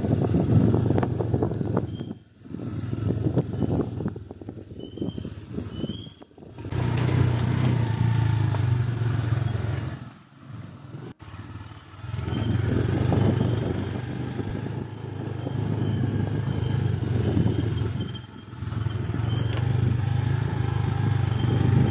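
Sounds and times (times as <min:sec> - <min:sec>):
motorcycle engine revving: 0:00.0 - 0:21.9.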